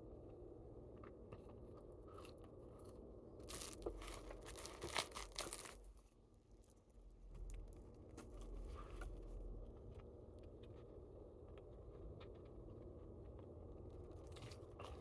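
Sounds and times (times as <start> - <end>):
crinkling and tearing food: 1.0 - 9.4, 13.3 - 15.0.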